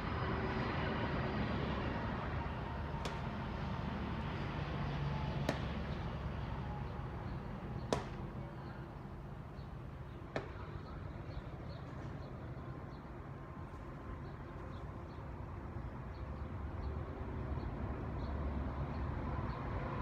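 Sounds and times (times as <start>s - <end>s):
traffic noise with low rumble: 0.0s - 20.0s.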